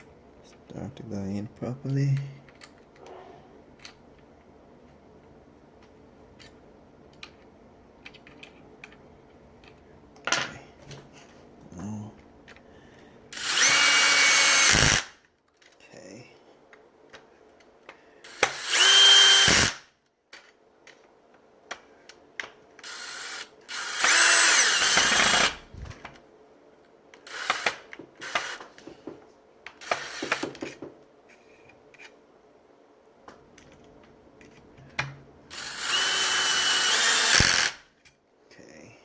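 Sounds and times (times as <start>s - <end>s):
power drill motor whine: 13.3s - 15.0s, 18.3s - 19.8s, 22.8s - 25.6s, 27.3s - 28.6s, 29.8s - 30.4s, 35.5s - 37.8s.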